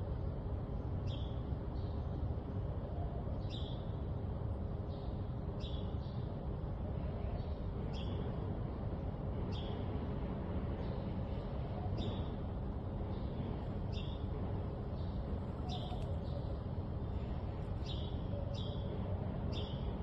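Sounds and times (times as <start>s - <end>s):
steady low rumble: 0.0s - 20.0s
bird chirping: 14.9s - 16.6s, 17.8s - 19.9s.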